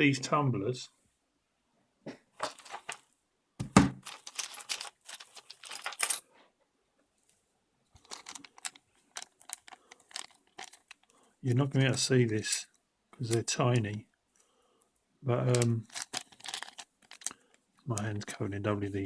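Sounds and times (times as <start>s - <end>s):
key and lock parts clinking: 2.4s - 3.0s, 4.0s - 6.2s, 8.0s - 11.1s, 15.5s - 17.4s
knock: 3.6s - 4.0s.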